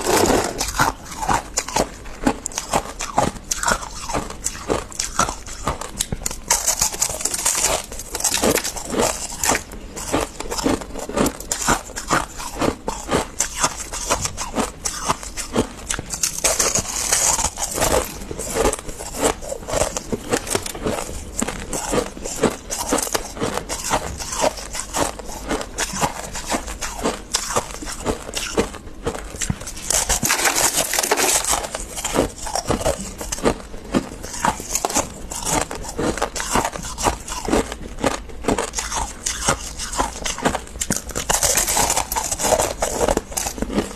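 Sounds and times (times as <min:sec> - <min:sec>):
rasping scraping: 0:00.0 - 0:01.1
frost crunching: 0:00.0 - 0:05.6, 0:06.5 - 0:28.6, 0:29.4 - 0:43.9.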